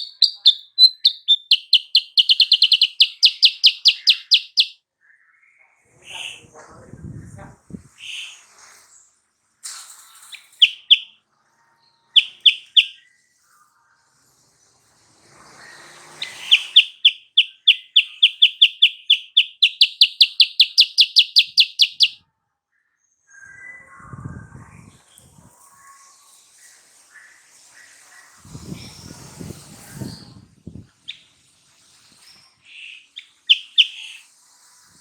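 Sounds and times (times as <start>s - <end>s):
bird singing rapid repeated notes: 0.0s - 4.8s, 10.4s - 11.2s, 12.2s - 13.0s, 16.2s - 22.2s, 32.8s - 34.3s.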